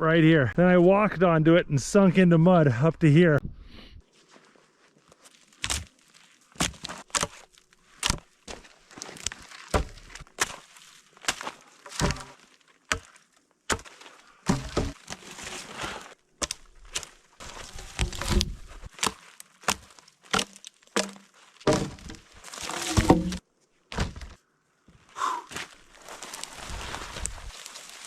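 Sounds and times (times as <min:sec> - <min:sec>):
wood cracking and knocking: 0:06.6 - 0:10.6, 0:11.3 - 0:15.2, 0:16.4 - 0:24.4.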